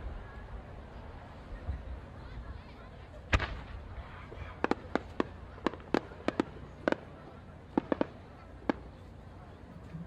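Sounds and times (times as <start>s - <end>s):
fireworks bangs: 3.2s - 9.1s.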